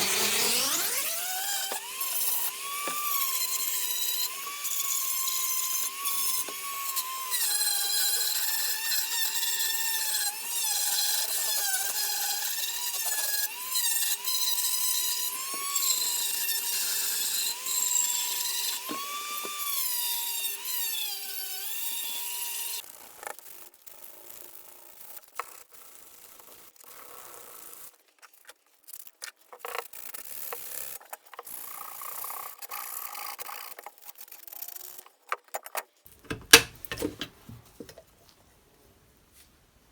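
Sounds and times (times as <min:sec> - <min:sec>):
electric power tool whining: 0:00.0 - 0:22.8, 0:36.2 - 0:37.3
handling clicks and scraping: 0:35.1 - 0:38.2.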